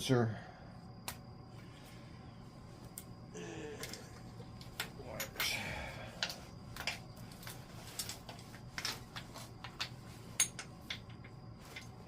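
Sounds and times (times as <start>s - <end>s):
metal hardware and tools clinking: 4.7s - 12.0s.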